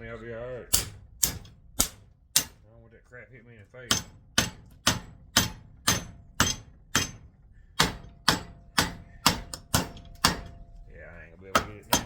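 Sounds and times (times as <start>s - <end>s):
hammer striking metal coil: 0.7s - 2.6s, 3.9s - 10.9s, 11.5s - 12.0s.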